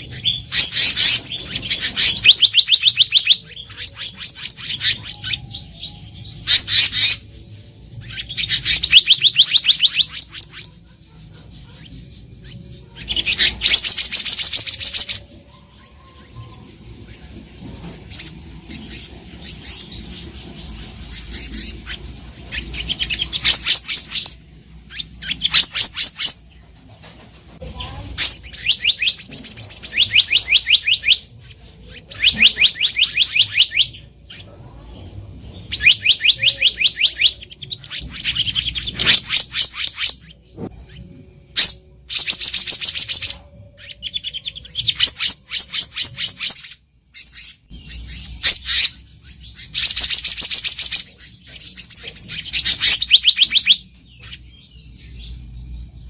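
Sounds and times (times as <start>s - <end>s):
bird singing rapid high notes: 0.0s - 10.8s, 27.8s - 34.4s, 35.7s - 55.5s.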